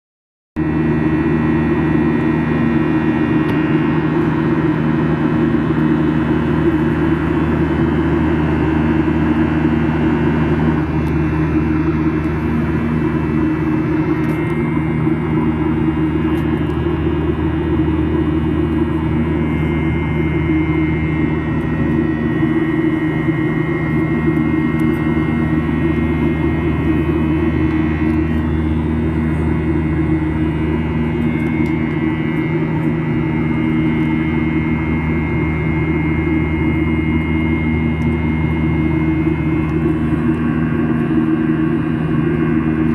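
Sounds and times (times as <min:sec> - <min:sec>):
jet engines droning in cabin: 0:00.6 - 0:42.9.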